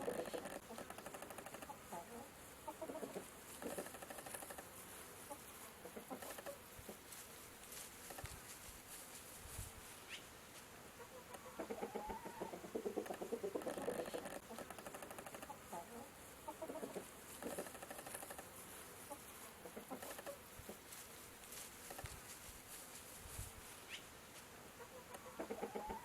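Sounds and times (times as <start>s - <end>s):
chickens clucking: 0.0s - 7.2s, 10.9s - 21.0s, 24.8s - 26.0s.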